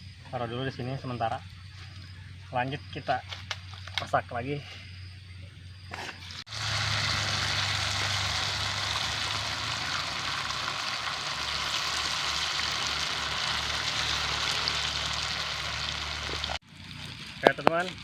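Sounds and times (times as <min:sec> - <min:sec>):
batter sizzling in hot oil: 0:06.4 - 0:18.0.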